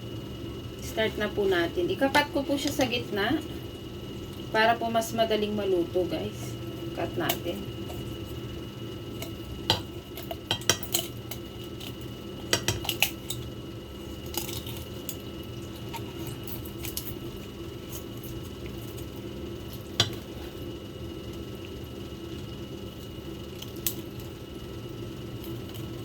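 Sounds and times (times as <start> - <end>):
steady background hum: 0.0 - 26.0.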